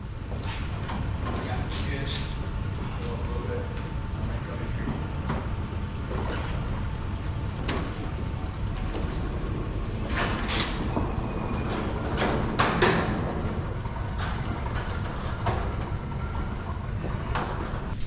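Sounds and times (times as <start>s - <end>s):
clanks and knocks: 7.5s - 18.0s.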